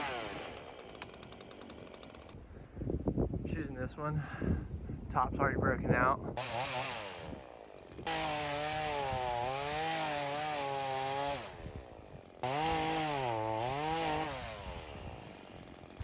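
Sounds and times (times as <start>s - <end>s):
chainsaw cutting wood: 0.0s - 2.4s, 6.4s - 16.0s.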